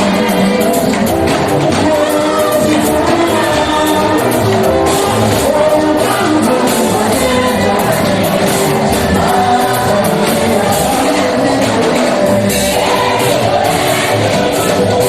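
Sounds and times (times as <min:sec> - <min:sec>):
instrumental accompaniment: 0:00.0 - 0:15.0
steady percussion beat: 0:00.0 - 0:15.0
choir singing: 0:01.7 - 0:15.0.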